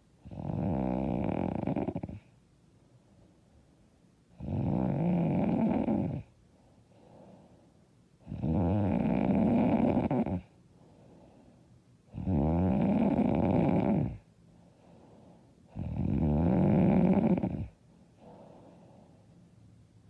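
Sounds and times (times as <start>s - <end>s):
quiet breathing: 0.0s - 20.0s
woman snoring: 0.2s - 2.3s, 4.4s - 6.3s, 8.2s - 10.5s, 12.1s - 14.2s, 15.7s - 17.8s.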